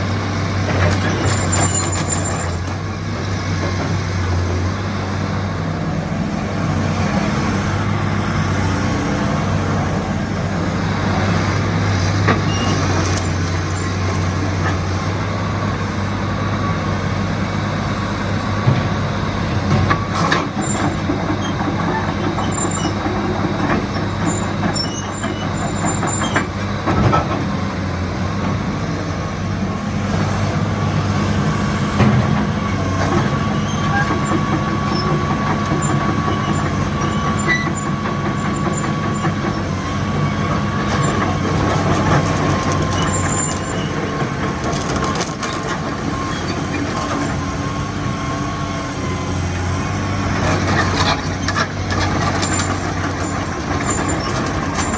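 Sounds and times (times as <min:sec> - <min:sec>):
excavator diesel engine hum: 0:00.0 - 0:54.9.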